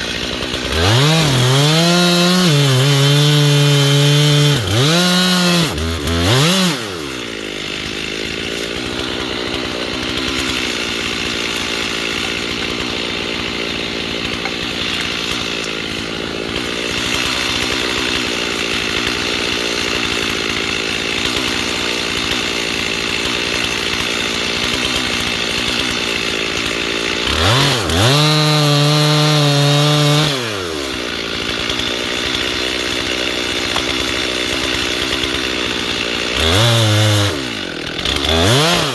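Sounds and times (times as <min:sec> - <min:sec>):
chainsaw cutting tree trunk: 0:00.0 - 0:38.9.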